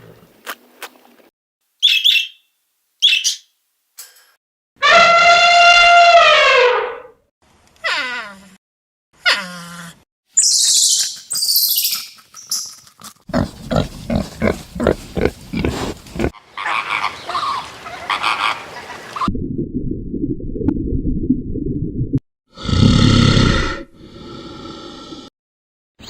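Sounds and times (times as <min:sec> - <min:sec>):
short pig-like grunts: 0:13.3 - 0:16.4
animal squealing: 0:13.3 - 0:17.0.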